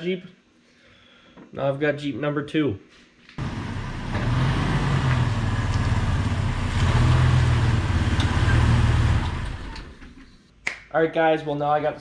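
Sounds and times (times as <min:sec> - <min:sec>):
car engine running: 0:03.4 - 0:10.1.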